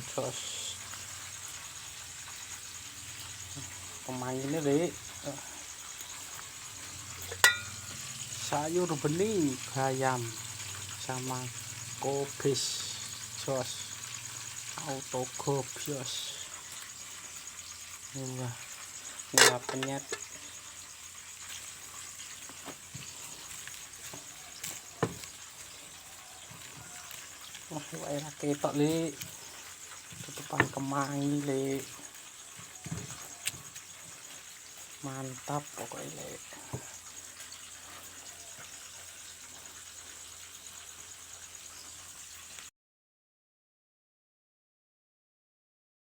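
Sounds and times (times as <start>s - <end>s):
steady background hiss: 0.0s - 16.6s, 17.5s - 20.8s
high insect trill: 0.0s - 42.7s.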